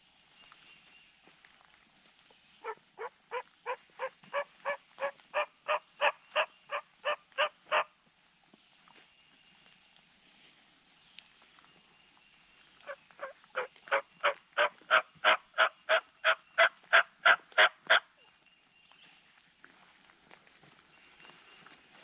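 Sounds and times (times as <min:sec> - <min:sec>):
turkey yelps: 0:02.6 - 0:07.9, 0:12.8 - 0:18.3.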